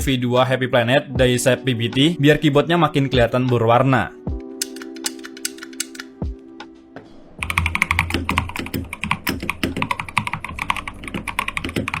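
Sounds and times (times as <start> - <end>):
fast typing on mechanical keyboard: 4.6 - 6.1, 7.4 - 12.0.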